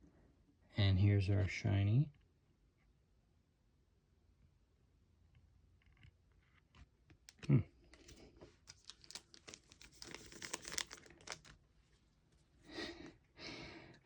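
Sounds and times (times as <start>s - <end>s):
foil card pack crinkling and tearing: 7.9s - 11.6s.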